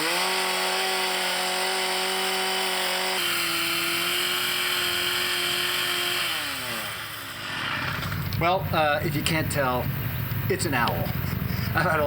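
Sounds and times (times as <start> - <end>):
chainsaw revving carving wood: 0.0 - 9.6.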